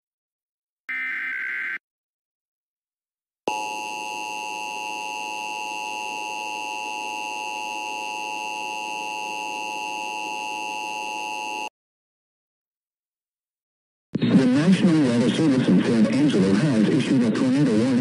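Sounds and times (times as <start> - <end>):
shrill two-tone alert signal: 0.9 - 1.8.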